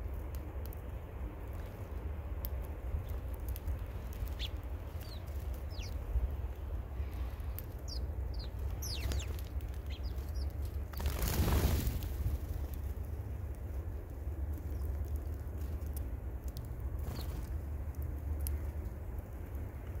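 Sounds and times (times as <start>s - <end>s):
steady low rumble: 0.0s - 20.0s
birds chirping: 3.0s - 11.9s, 16.9s - 17.5s.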